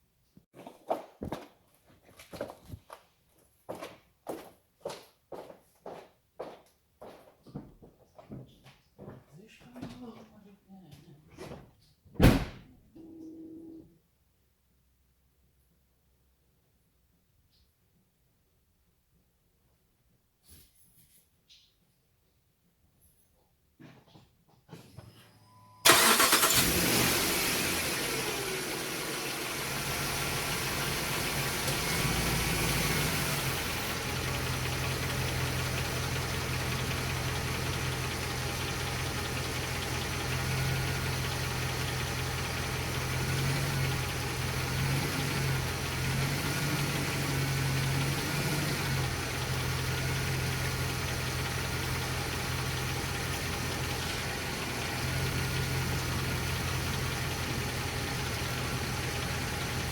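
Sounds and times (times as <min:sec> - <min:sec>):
pickup truck engine idling: 0:25.9 - 0:59.9.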